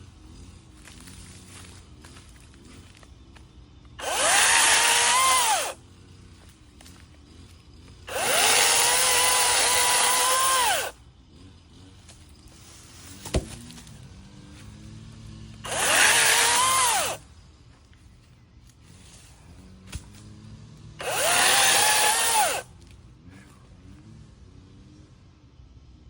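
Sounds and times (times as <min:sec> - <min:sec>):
electric chainsaw whining: 0:03.8 - 0:17.4, 0:19.0 - 0:23.0.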